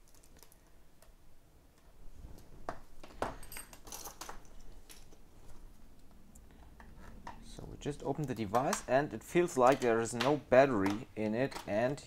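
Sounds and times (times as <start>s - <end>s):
light metallic clinks: 3.3s - 5.2s.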